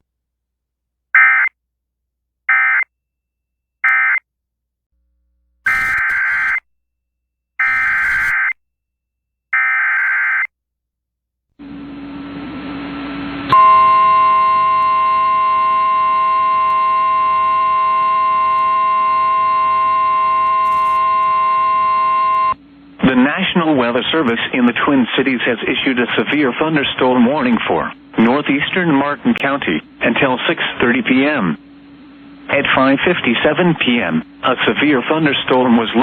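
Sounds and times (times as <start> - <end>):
buzzy data bursts: 5.7 - 6.6, 7.6 - 8.5, 19.2 - 21.3
steady alarm tone: 7.6 - 8.5, 13.5 - 22.8.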